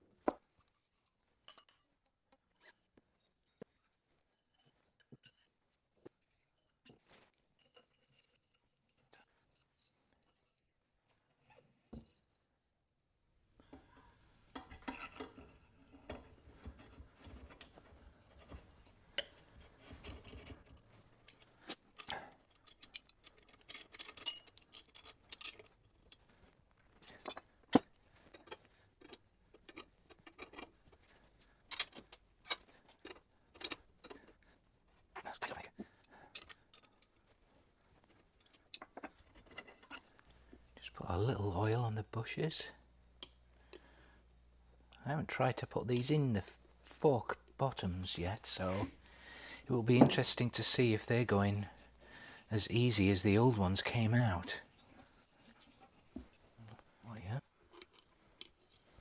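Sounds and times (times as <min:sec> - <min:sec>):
metallic clicks of tools and parts: 0:20.0 - 0:26.3, 0:27.1 - 0:31.0, 0:31.7 - 0:34.2, 0:36.0 - 0:37.2.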